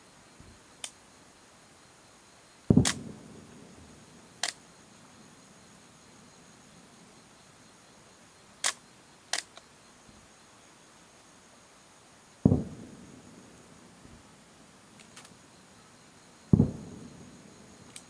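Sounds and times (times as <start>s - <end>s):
sharp cracks: 2.7s - 3.4s, 4.4s - 4.6s, 15.0s - 15.4s, 16.6s - 18.0s
firework shell booming: 2.7s - 3.7s, 12.5s - 13.1s, 16.5s - 17.4s.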